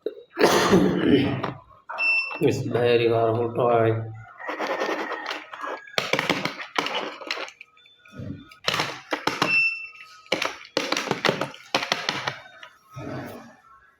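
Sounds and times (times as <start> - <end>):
toy roller clicky whirring: 4.4 - 12.7.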